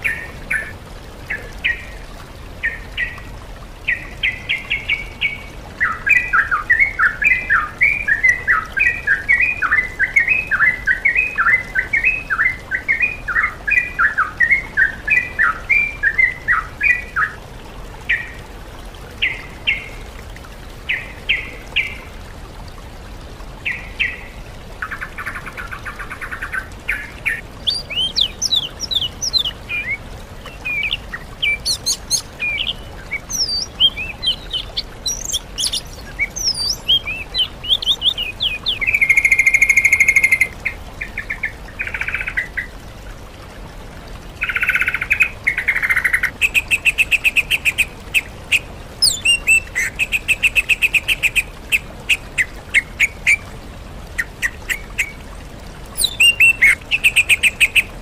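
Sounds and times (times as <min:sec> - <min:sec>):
songbirds singing: 0:02.6 - 0:17.4, 0:23.6 - 0:42.8, 0:44.4 - 0:53.4, 0:56.0 - 0:58.0
harsh buzzing bird chatter: 0:31.4 - 0:32.7, 0:33.3 - 0:38.2.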